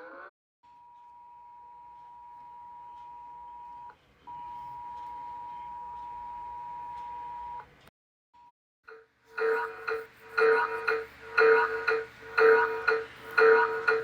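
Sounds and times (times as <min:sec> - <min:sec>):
two-pitch alarm tone: 0:09.4 - 0:14.0.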